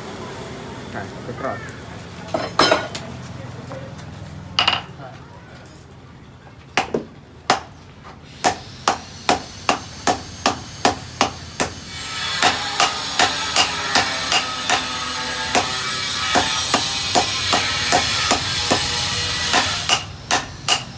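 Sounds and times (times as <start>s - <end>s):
hammer striking metal on anvil: 6.8s - 7.7s, 8.4s - 20.9s.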